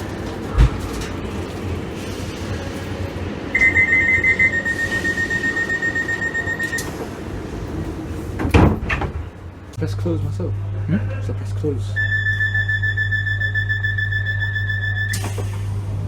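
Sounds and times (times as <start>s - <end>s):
high electronic beeping: 3.6s - 6.9s, 12.0s - 15.4s.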